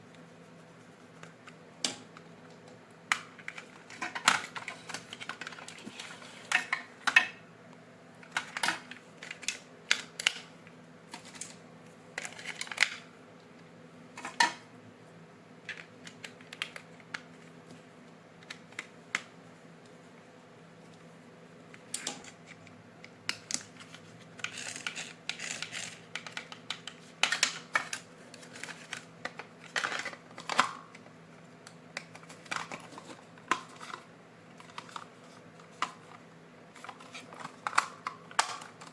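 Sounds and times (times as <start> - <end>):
hands handling plastic toy parts: 3.1 - 7.4, 8.2 - 10.5, 12.2 - 13.0, 23.4 - 31.1, 32.0 - 38.9.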